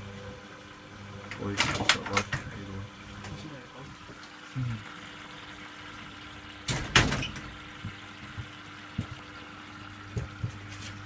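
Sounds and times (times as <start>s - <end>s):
washing machine motor hum: 0.0s - 11.0s
water and laundry swishing: 6.7s - 11.0s.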